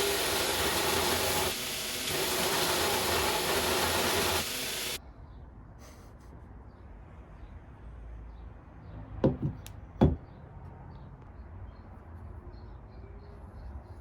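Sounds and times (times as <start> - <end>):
dull knocks: 9.2 - 10.3.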